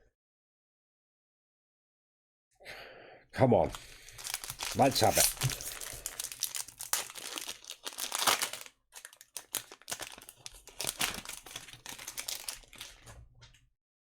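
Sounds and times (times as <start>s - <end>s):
plastic wrapper crinkling and tearing: 3.7s - 13.2s.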